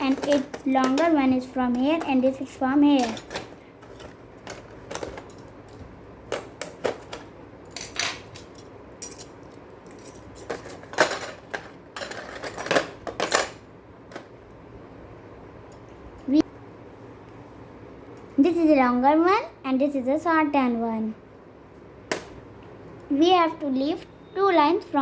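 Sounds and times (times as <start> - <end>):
small metal parts clinking: 0.0 - 13.6.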